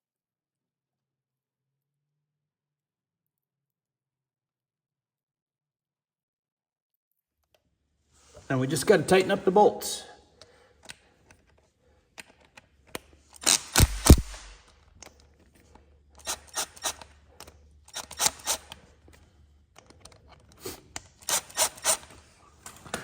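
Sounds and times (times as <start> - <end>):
hand tool clicking and scraping: 12.2 - 23.0.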